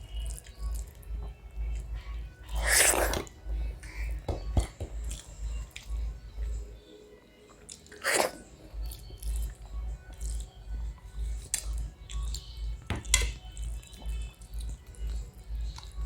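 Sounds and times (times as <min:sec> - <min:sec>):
background music with low beat: 0:00.0 - 0:16.0
chewing with sharp clicks: 0:00.1 - 0:01.9, 0:07.5 - 0:10.6, 0:11.2 - 0:16.0
noisy mouthfuls: 0:02.5 - 0:04.2, 0:07.7 - 0:09.5.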